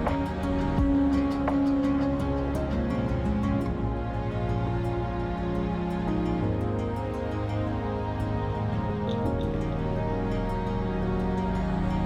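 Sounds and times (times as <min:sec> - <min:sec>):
light ticking beat: 0:00.0 - 0:04.6
soft slow instrumental music: 0:00.0 - 0:12.0.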